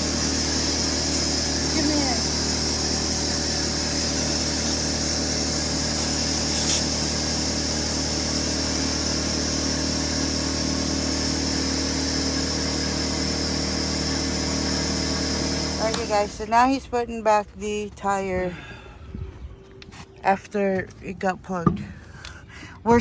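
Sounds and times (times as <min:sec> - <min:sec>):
air compressor running: 0:00.0 - 0:16.5.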